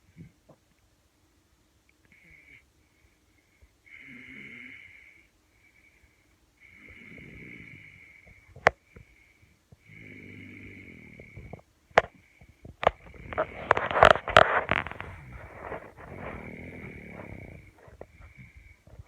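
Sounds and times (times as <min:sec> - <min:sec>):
rustling and knocks: 0:11.4 - 0:19.0
person snoring with whistle: 0:16.1 - 0:17.8.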